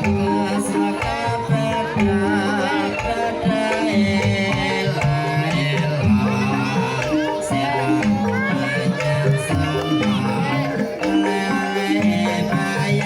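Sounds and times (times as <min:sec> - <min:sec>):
hand drum strokes: 0:00.0 - 0:13.0
metallophone notes: 0:00.0 - 0:13.0
person singing: 0:00.0 - 0:13.0.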